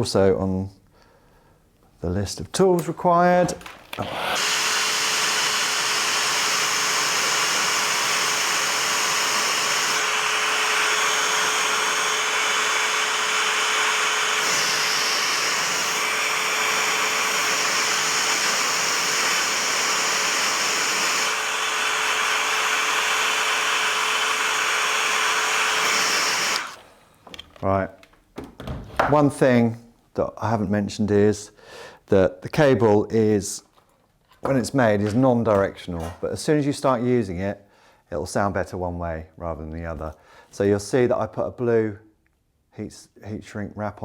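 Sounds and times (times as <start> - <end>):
heat gun blowing air: 3.5 - 27.2.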